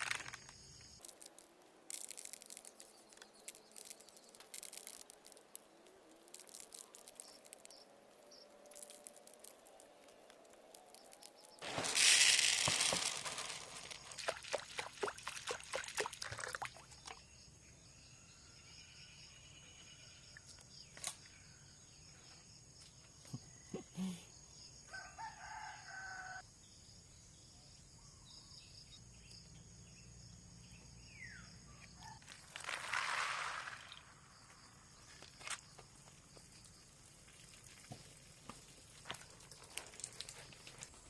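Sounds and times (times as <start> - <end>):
rooster crowing: 24.9 - 26.4.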